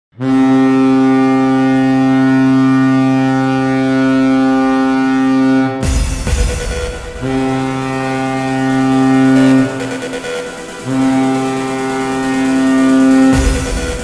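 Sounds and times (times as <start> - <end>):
deep goal horn blast: 0.1 - 14.0
burst of loud noise: 5.8 - 14.0.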